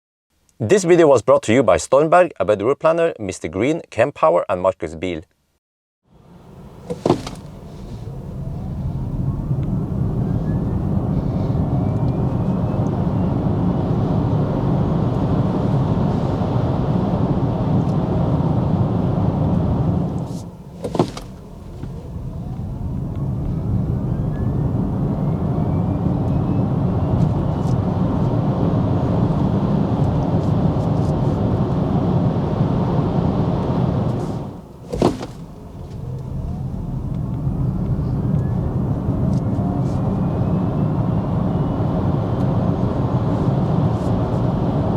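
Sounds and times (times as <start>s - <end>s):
tyre and road rumble: 6.5s - 11.6s, 19.9s - 25.4s, 34.0s - 40.0s.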